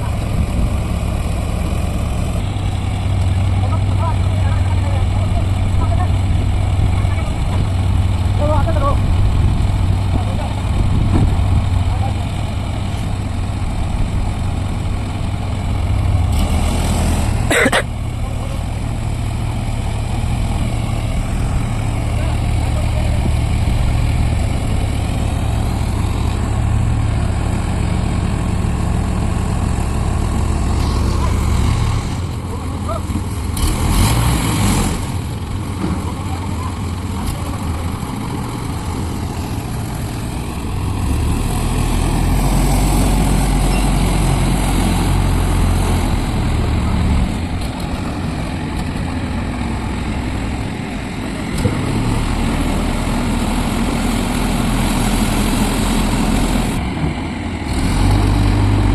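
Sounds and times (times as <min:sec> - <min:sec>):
heavy diesel engine running: 0:00.0 - 0:58.9
brief rush of noise: 0:30.7 - 0:32.2.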